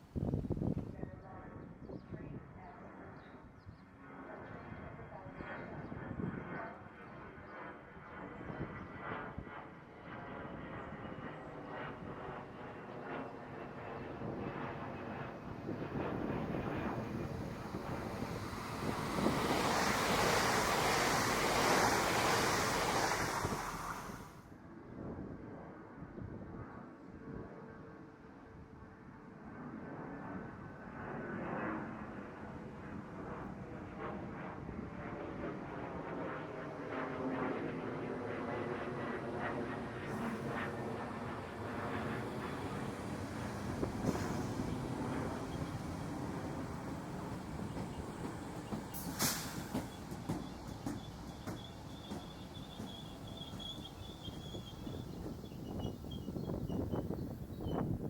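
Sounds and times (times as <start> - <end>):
train wheels rumbling on rail: 15.8 - 24.4, 40.1 - 58.0
faint high whine: 40.2 - 57.9
wheels clattering over rail joints: 43.0 - 55.7.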